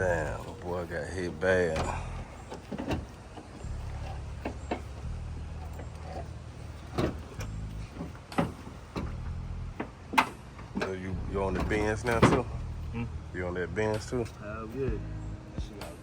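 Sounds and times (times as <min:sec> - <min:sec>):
vehicle engine idling: 0:00.0 - 0:16.0
sharp clicks and knocks: 0:01.8 - 0:11.0.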